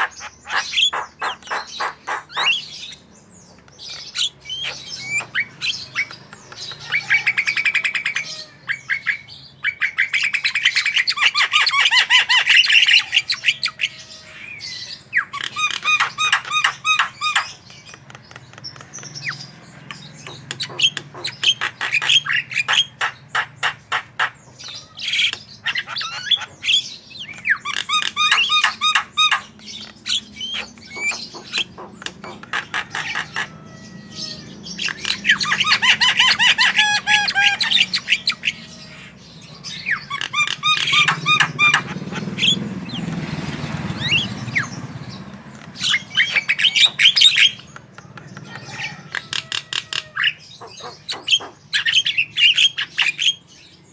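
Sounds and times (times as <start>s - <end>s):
bird singing trills and whistles: 0.0s - 43.2s, 43.9s - 53.9s.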